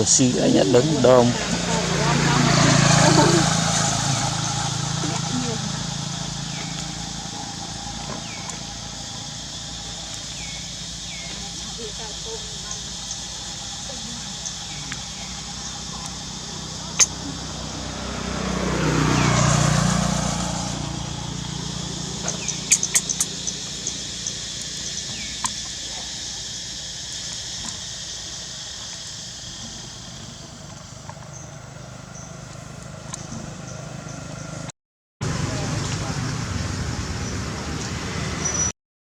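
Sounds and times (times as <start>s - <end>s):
motor vehicle passing by: 0.0s - 26.5s, 29.5s - 38.7s
sharp clicks: 22.2s - 24.7s.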